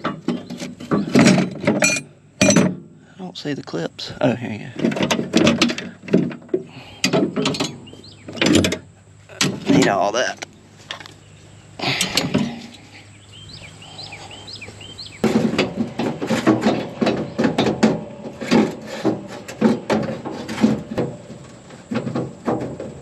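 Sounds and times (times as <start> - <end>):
knocks and clunks of parts: 0.0 - 3.0, 4.7 - 11.2, 11.8 - 12.9, 15.2 - 23.0.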